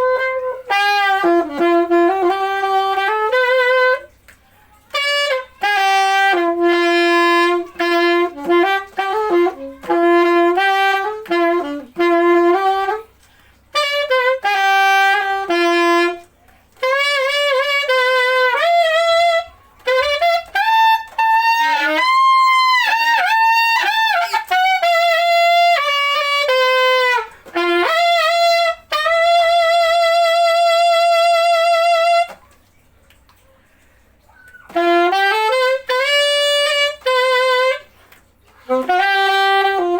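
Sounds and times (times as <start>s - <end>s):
solo alto saxophone: 0.0s - 39.9s.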